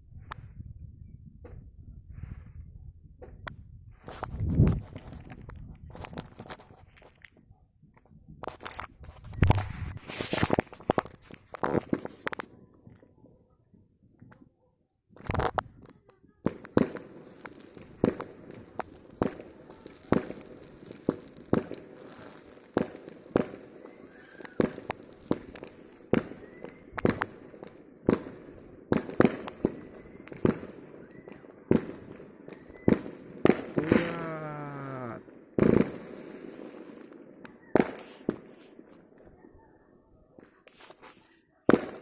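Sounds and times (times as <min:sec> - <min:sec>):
fireworks banging: 0:08.5 - 0:13.0, 0:15.2 - 0:39.4, 0:41.7 - 0:42.0.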